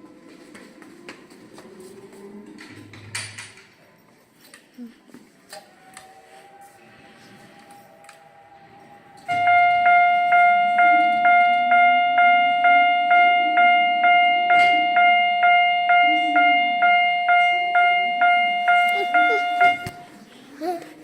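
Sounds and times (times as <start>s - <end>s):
level crossing warning bell: 6.1s - 20.2s.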